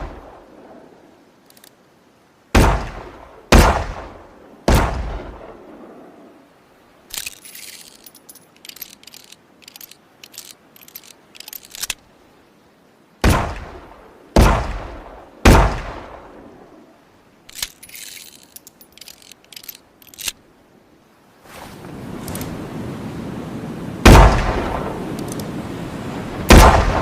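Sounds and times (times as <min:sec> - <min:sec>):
gunshots: 0:02.6 - 0:05.4, 0:14.4 - 0:16.2, 0:24.0 - 0:24.9, 0:26.5 - 0:27.0.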